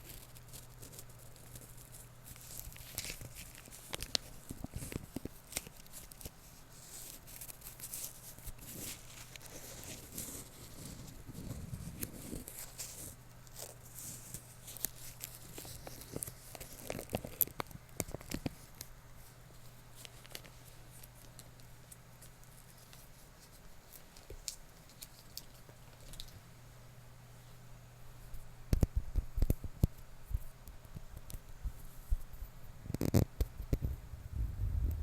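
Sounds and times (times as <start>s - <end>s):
faint low hum: 0.0s - 35.0s.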